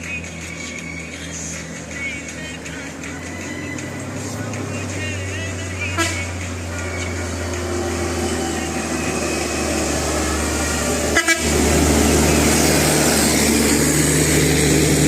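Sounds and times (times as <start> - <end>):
bus diesel engine running: 0.0 - 15.0
double horn toot: 6.0 - 6.3, 11.0 - 12.2.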